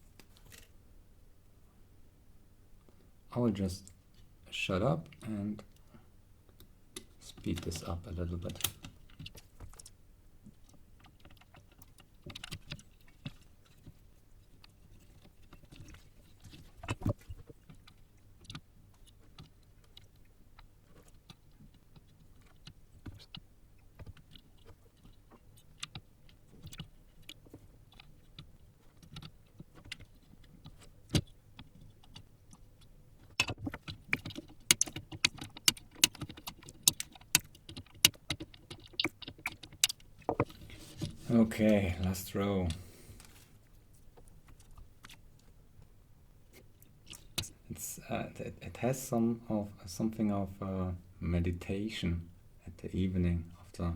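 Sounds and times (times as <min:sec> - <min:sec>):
sharp clicks and metallic taps: 0:25.8 - 0:41.2.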